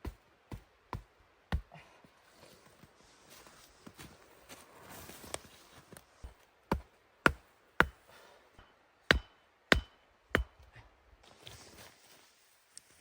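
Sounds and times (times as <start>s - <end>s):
axe chopping wood: 6.7s - 8.0s, 9.1s - 10.7s.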